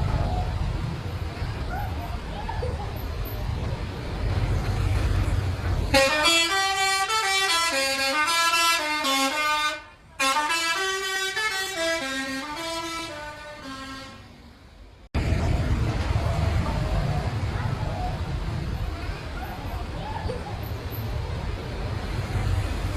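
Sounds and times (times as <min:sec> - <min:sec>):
bus horn playing multi-note tune: 0:05.9 - 0:14.4
low rumble: 0:15.2 - 0:18.9.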